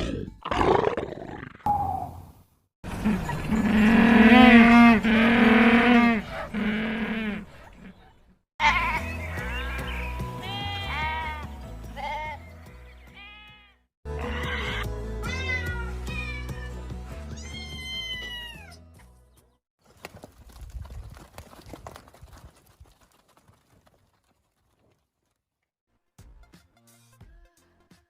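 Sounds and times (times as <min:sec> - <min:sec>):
high animal bleats: 0:03.2 - 0:07.5, 0:08.6 - 0:09.2, 0:10.4 - 0:12.4, 0:13.2 - 0:15.8.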